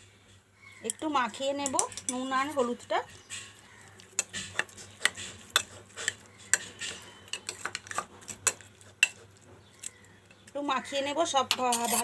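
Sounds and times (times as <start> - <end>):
spoon clinking against a bowl: 11.5 - 12.0.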